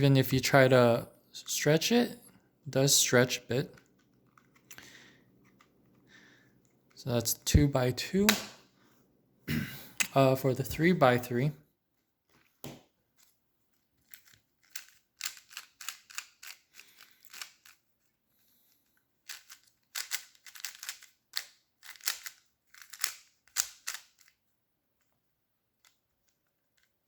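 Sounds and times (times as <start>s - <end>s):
plastic cube clicking: 14.1s - 17.8s, 19.3s - 24.4s.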